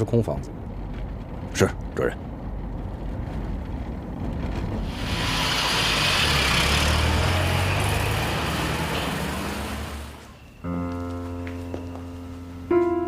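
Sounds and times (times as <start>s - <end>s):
car driving past: 4.7s - 10.6s.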